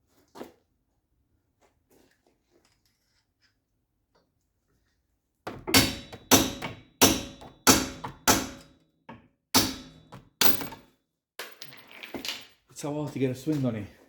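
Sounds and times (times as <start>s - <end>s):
hammer striking metal: 5.7s - 8.7s, 9.6s - 10.8s.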